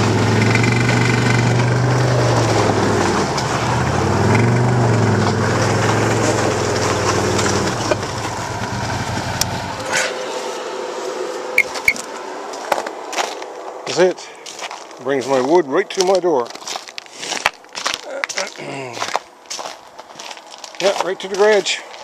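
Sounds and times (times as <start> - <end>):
snowmobile engine idling and revving: 0.0 - 15.6.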